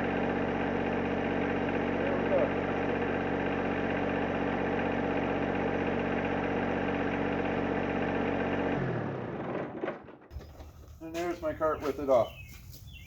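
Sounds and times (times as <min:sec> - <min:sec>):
diesel engine idling: 0:00.0 - 0:09.2.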